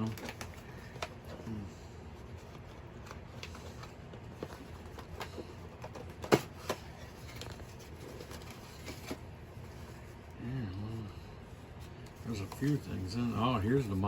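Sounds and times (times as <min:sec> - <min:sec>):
packaging clicks and rustles: 0:00.0 - 0:09.6.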